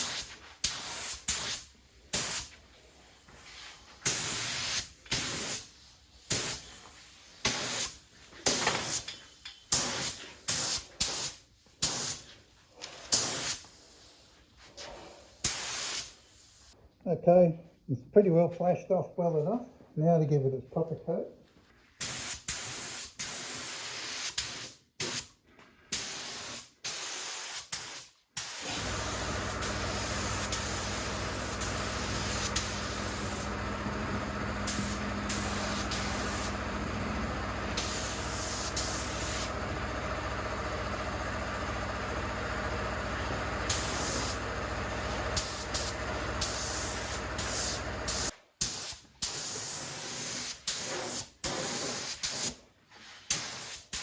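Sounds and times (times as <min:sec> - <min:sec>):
paint spray gun hissing: 0:00.0 - 0:02.5, 0:04.0 - 0:06.8, 0:15.5 - 0:16.2, 0:26.0 - 0:52.5, 0:53.3 - 0:54.0.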